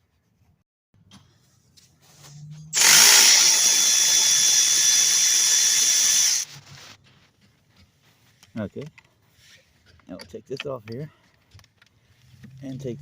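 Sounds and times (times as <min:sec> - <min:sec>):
power tool whining: 0:02.8 - 0:06.5.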